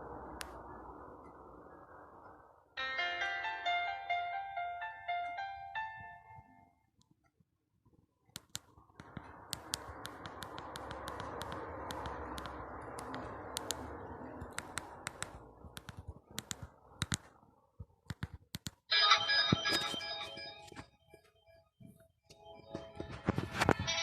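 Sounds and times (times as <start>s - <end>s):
steady noise: 0.0s - 3.6s, 8.4s - 18.9s.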